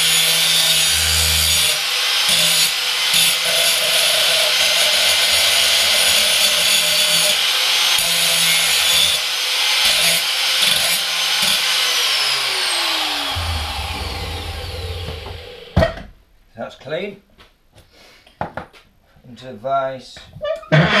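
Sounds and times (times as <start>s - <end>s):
power grinder on steel: 0.0s - 15.8s.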